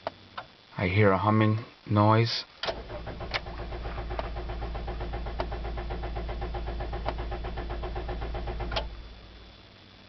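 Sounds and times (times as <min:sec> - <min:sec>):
steady low hum: 0:00.0 - 0:10.0
car engine cranking: 0:02.7 - 0:09.3.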